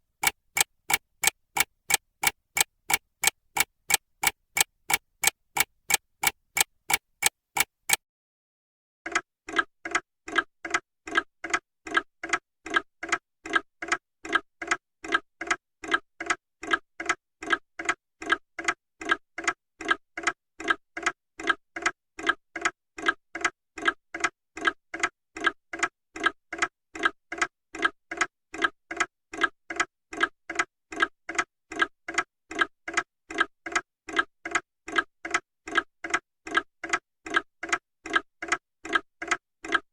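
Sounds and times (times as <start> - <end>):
mantel clock tick-tock: 0.0 - 8.0, 9.1 - 39.9
desk clock high ticking: 0.2 - 8.0.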